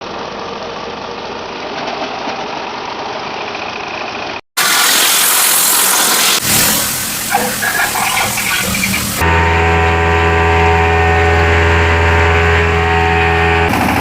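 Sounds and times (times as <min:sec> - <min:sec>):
loud hissing noise: 0:04.6 - 0:09.2
wood crusher machine droning: 0:06.4 - 0:14.0.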